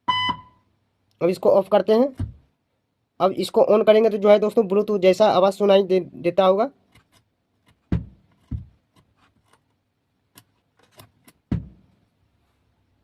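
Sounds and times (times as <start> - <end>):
speaker popping thump: 2.2 - 2.5, 7.9 - 8.8, 11.5 - 11.9.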